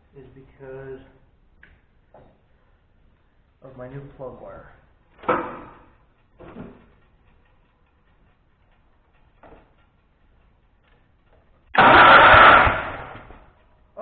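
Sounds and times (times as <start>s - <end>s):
faint clicks: 1.5s - 3.6s, 4.2s - 11.8s, 13.1s - 14.0s
engine cranked by starter: 11.7s - 13.5s.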